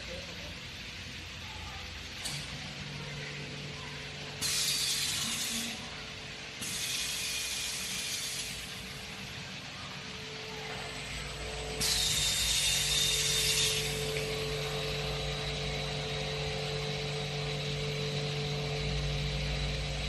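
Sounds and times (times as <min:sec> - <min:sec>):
glass cutting machine humming: 0:02.2 - 0:20.0
loud hissing: 0:11.4 - 0:15.2.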